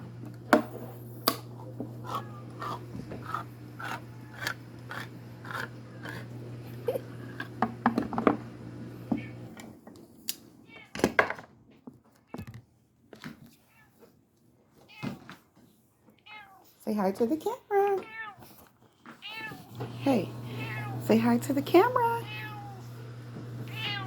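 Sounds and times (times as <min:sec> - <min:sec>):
can opener clicking and squeaking: 0:01.2 - 0:06.3.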